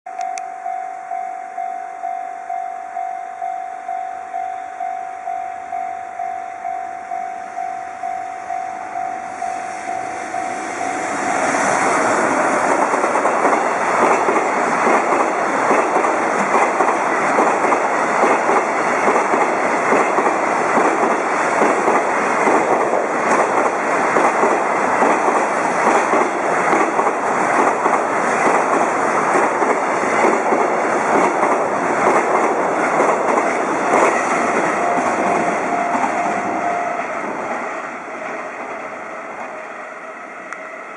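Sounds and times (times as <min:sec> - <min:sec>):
level crossing bell dinging: 0:00.1 - 0:11.5
freight train wheels rumbling: 0:06.6 - 0:40.9.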